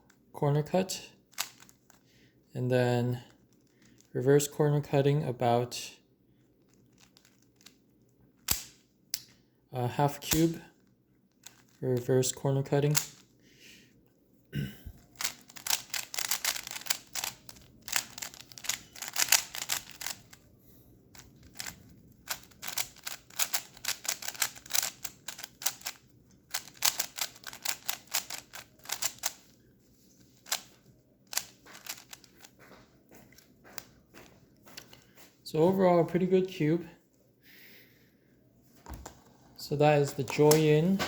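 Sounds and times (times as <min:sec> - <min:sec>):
puzzle cube layers clicking: 0:15.2 - 0:20.4, 0:21.2 - 0:29.5, 0:30.4 - 0:30.7, 0:31.3 - 0:32.5.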